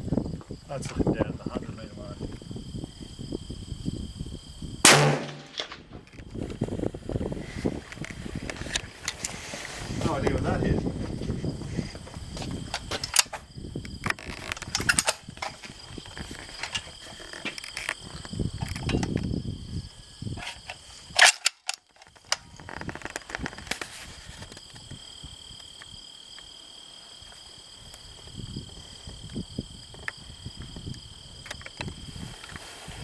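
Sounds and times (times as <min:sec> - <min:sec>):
gunshot cracks: 0:04.9 - 0:05.8.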